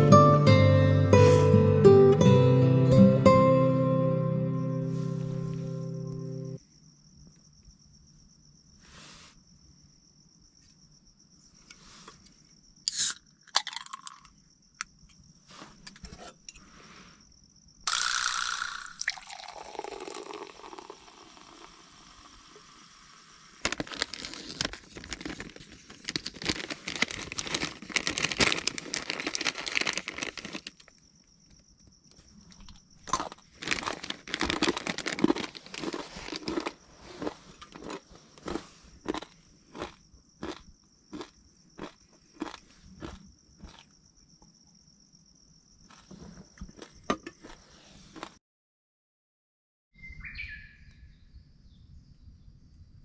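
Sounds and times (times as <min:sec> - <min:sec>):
liquid pouring into container: 0:17.9 - 0:22.4
dense crackling: 0:23.6 - 0:30.9, 0:33.1 - 0:37.3.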